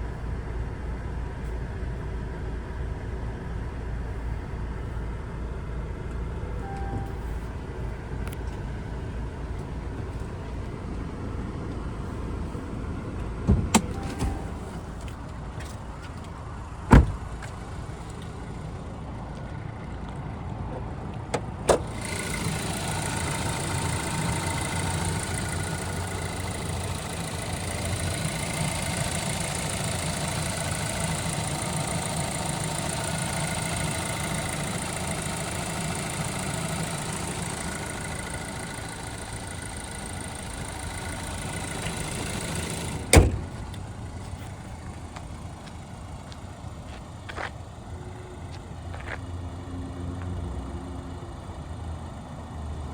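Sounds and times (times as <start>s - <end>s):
car engine starting and idling: 0.0s - 52.9s
car door thump: 13.4s - 14.7s, 16.9s - 17.5s, 41.6s - 43.8s.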